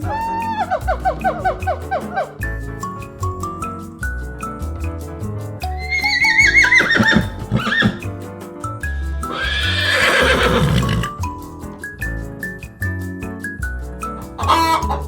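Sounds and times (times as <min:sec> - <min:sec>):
simple background tune: 0:00.0 - 0:15.0
horse whinnying: 0:05.8 - 0:08.1, 0:09.3 - 0:11.2.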